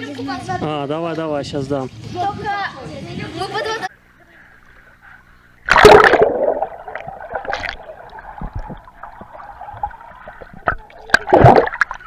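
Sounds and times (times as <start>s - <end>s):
water sloshing and gurgling: 5.7s - 12.0s.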